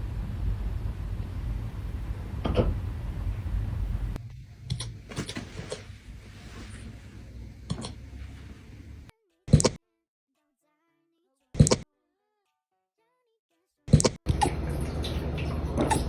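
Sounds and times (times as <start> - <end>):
puppy hiccupping: 15.7 - 16.0.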